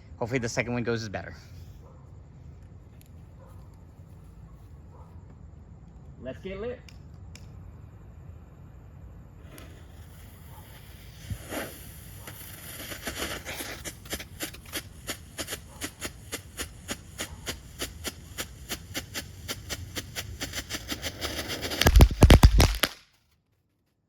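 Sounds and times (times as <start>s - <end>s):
firework popping: 9.3s - 23.2s.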